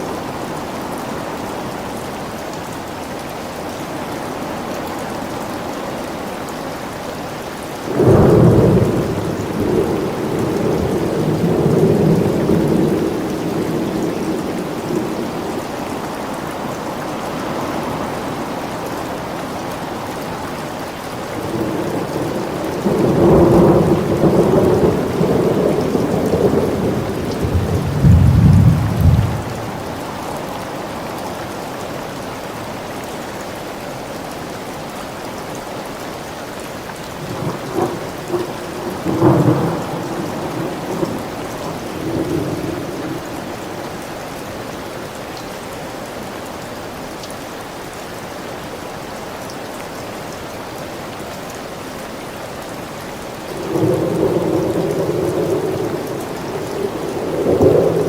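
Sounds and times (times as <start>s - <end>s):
steady rain: 0.0s - 58.0s
thunder rumbling: 21.4s - 30.2s, 37.2s - 43.9s, 53.6s - 58.0s.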